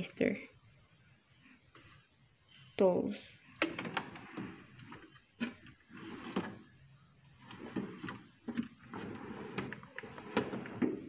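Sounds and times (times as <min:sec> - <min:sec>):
tool chest drawers sliding: 0:03.6 - 0:06.7, 0:07.4 - 0:11.0
tools shifting inside drawers: 0:07.4 - 0:11.0.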